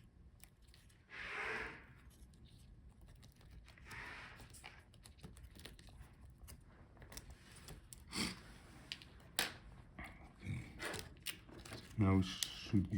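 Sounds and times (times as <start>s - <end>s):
small clicks of laptop parts: 2.2s - 8.1s.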